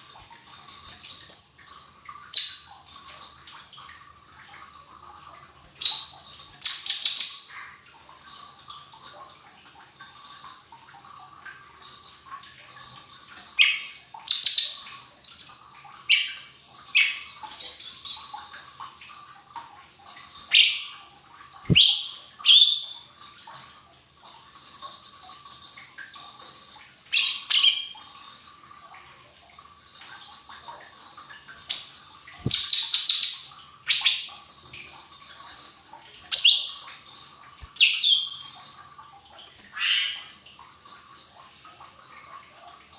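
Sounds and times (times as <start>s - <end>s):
leafbird chirping: 21.7s - 22.8s, 32.4s - 33.4s, 37.8s - 38.4s.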